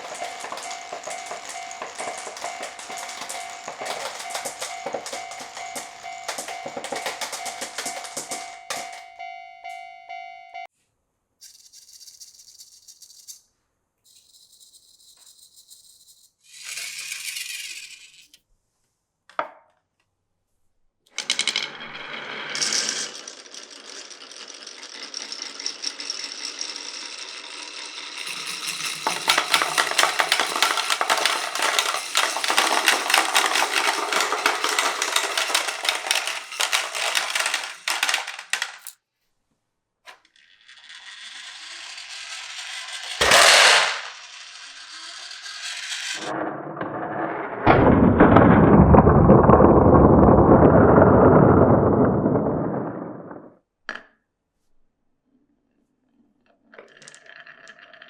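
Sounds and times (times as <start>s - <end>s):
marbles rolling down wooden run: 0.0s - 9.3s, 21.2s - 39.0s, 40.1s - 53.6s, 56.8s - 58.0s.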